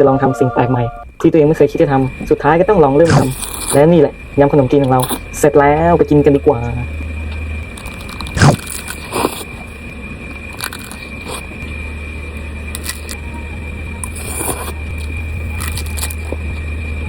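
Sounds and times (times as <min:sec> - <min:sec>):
steady low hum: 0:00.0 - 0:17.0
eating crunches and mouth noises: 0:03.0 - 0:04.0, 0:04.8 - 0:05.3, 0:06.3 - 0:17.0.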